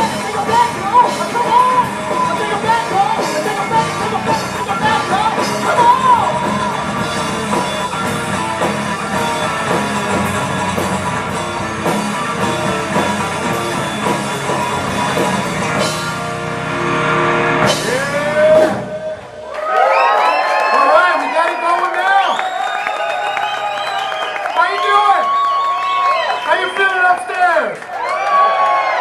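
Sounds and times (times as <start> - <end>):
high bending melodic line: 0.0 - 19.5
live rock band playing: 0.0 - 19.6.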